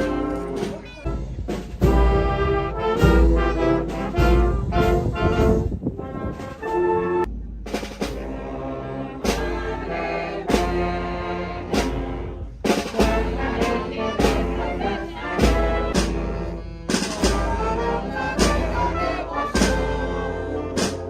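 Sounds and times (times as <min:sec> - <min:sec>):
brass band playing march: 0:00.0 - 0:21.0
drum strikes: 0:07.2 - 0:21.0.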